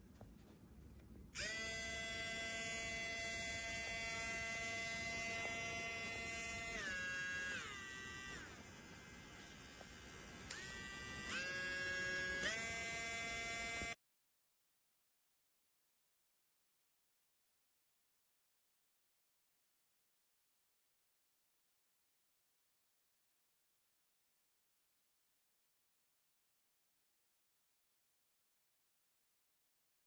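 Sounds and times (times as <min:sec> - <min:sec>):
rotary tool motor whining: 0:01.4 - 0:14.0.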